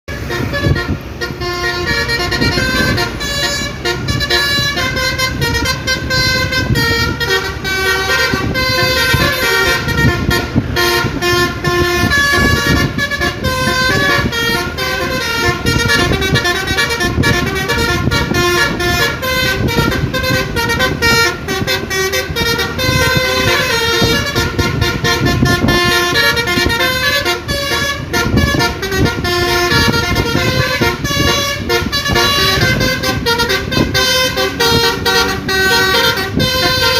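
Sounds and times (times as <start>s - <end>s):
bus engine running: 0.1s - 36.9s
bus horn playing a melody: 0.1s - 36.9s.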